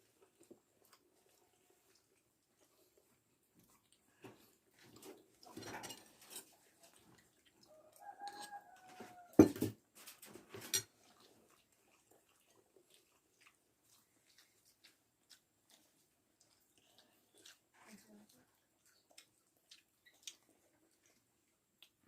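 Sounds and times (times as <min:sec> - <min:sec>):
rooster crowing: 0:07.7 - 0:09.5.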